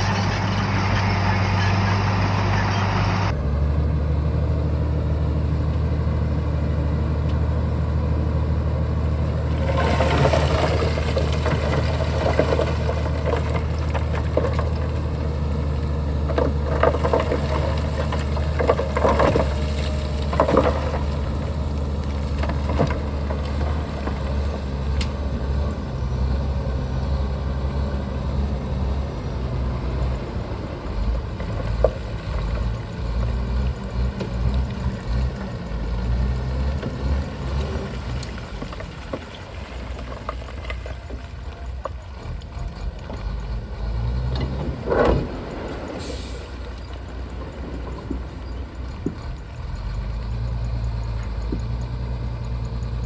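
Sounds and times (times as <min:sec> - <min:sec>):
bulldozer diesel engine running: 0:00.0 - 0:53.0.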